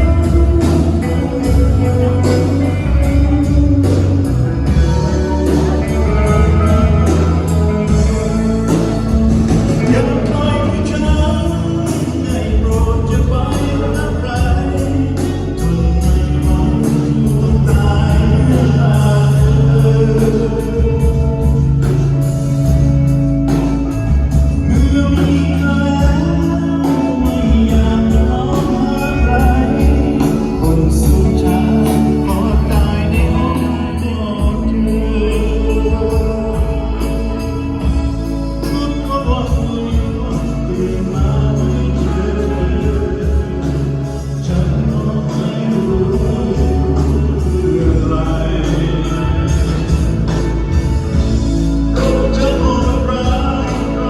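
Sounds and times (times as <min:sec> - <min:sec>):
bass guitar: 0:00.0 - 0:54.0
man singing: 0:00.0 - 0:54.0
steady drum beat: 0:00.0 - 0:54.0.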